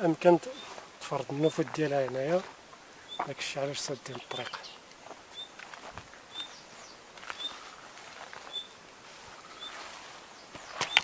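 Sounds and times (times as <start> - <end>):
footsteps crackling through brush: 0.0 - 11.0
bird chirping: 0.4 - 1.7, 3.0 - 5.6, 6.2 - 11.0
twigs snapping: 10.6 - 11.0.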